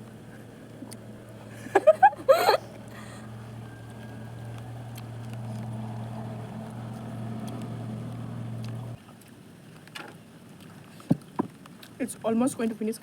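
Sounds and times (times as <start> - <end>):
low motor hum: 0.0 - 9.0.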